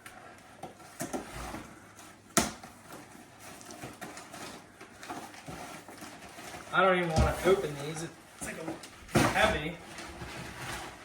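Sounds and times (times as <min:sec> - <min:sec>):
items rustling in box: 0:00.0 - 0:11.0.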